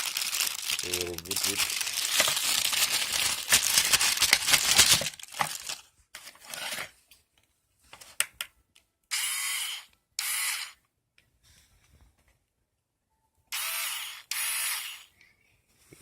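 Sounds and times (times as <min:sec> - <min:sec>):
plastic packaging crinkling: 0:00.0 - 0:06.6
cordless screwdriver motor: 0:09.1 - 0:10.8, 0:13.5 - 0:15.1.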